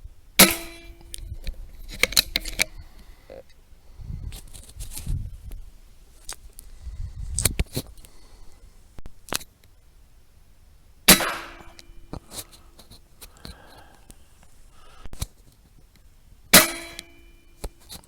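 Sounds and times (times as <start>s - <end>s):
gun handling clicks and knocks: 0.4s - 3.1s, 11.1s - 14.5s
rifle shot: 11.1s - 12.0s, 16.6s - 17.2s.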